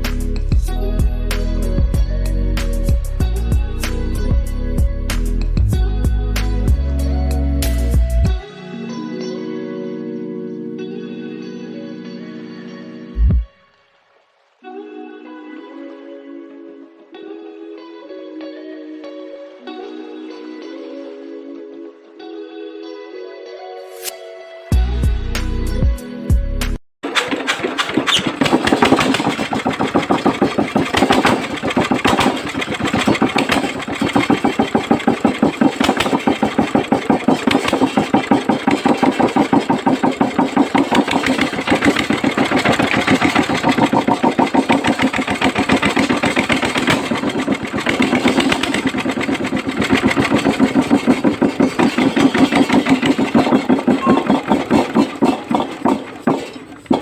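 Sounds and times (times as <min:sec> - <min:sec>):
small engine idling: 0:27.0 - 0:57.0.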